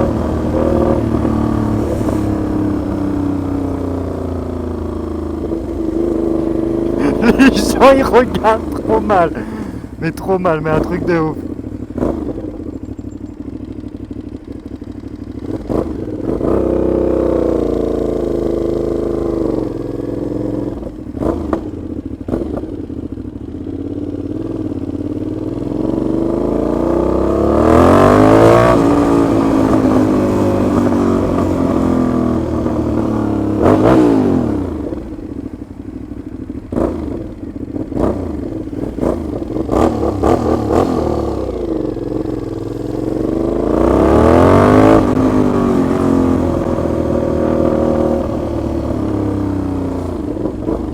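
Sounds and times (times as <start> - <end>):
motorcycle engine revving: 36.7 - 50.9.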